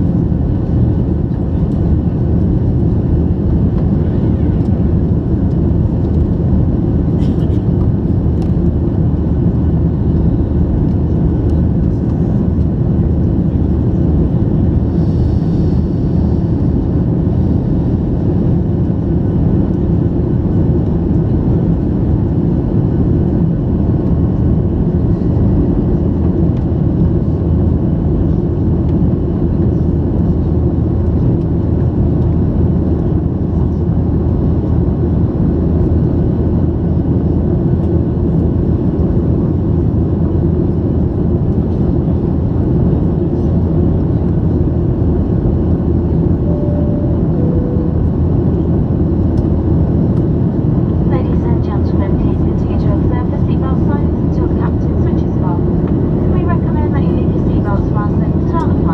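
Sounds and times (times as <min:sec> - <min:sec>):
jet engines roaring: 0:37.8 - 0:58.9.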